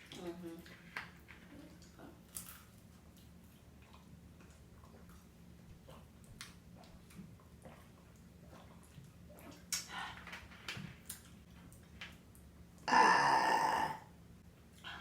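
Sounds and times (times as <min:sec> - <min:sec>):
chewing and wet mouth clicks: 0:01.8 - 0:09.9
loud burp: 0:12.9 - 0:14.1.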